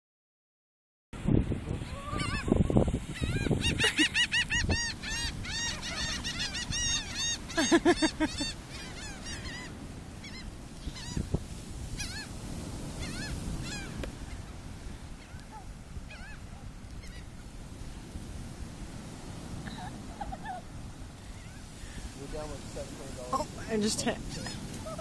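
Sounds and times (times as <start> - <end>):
flock of birds calling: 1.8 - 11.3, 11.9 - 14.6, 15.2 - 17.3, 23.3 - 25.0.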